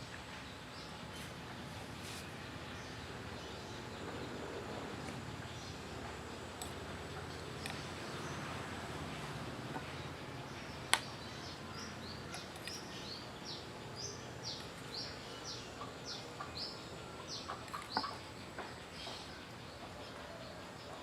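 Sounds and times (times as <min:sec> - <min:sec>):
sharp click: 0:10.9 - 0:11.1.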